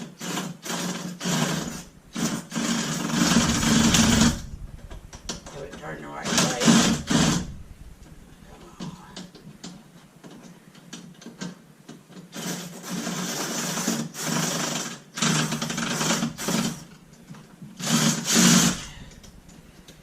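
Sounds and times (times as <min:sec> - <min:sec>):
cordless impact driver: 0:17.8 - 0:19.4.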